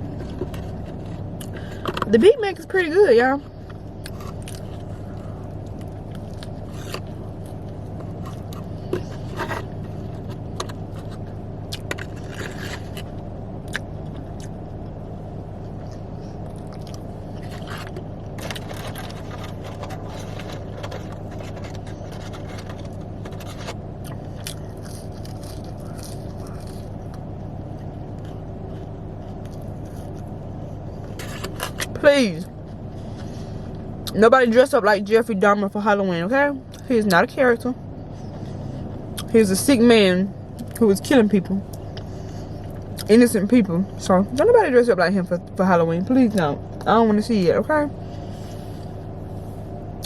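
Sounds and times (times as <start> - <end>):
low hum inside a car: 0.0 - 50.0
person chewing food: 3.6 - 14.9, 15.7 - 31.9.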